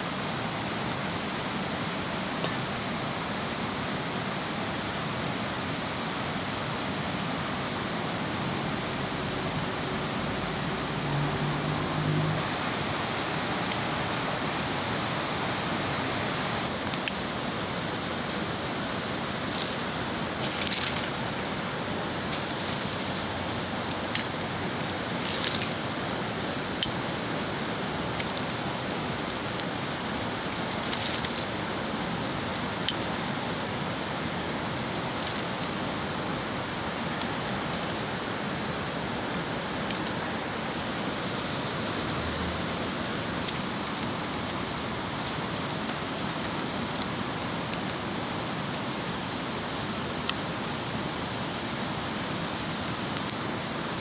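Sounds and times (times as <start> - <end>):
rushing hiss: 12.3 - 49.9
campfire crackling and popping: 16.7 - 17.4, 18.2 - 33.7, 35.0 - 40.8, 43.0 - 50.8, 51.5 - 54.0.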